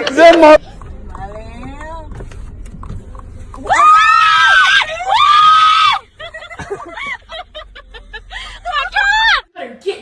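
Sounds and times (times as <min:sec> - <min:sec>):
high-pitched screams: 0:03.6 - 0:06.0.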